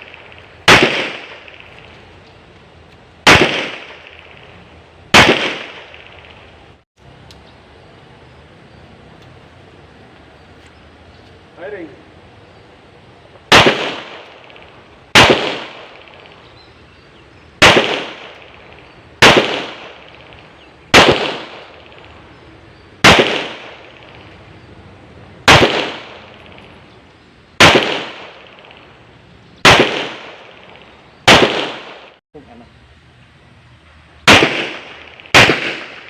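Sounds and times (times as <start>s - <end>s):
reverberating gunshot tail: 0.0s - 1.9s, 3.2s - 4.5s, 5.1s - 6.4s, 13.5s - 16.4s, 17.6s - 22.1s, 23.0s - 24.2s, 25.4s - 26.8s, 27.6s - 28.9s, 29.6s - 32.2s, 34.3s - 36.0s
pistol shots: 0.0s - 2.0s, 3.2s - 4.5s, 5.1s - 6.5s, 13.5s - 16.5s, 17.6s - 22.1s, 23.0s - 24.2s, 25.4s - 26.8s, 27.6s - 28.9s, 29.6s - 32.2s, 34.2s - 36.0s.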